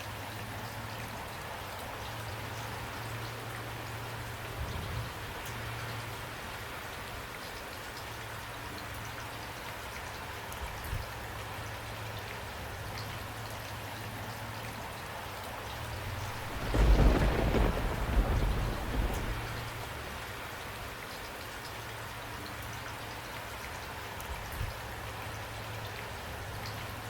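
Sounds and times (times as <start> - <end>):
steady rain falling: 0.0 - 27.0
thunder peal: 15.8 - 20.5.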